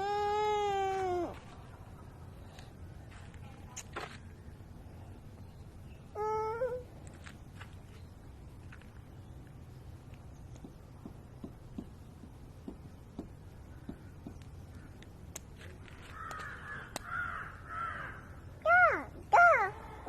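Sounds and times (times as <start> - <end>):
crow cawing: 16.0 - 18.3.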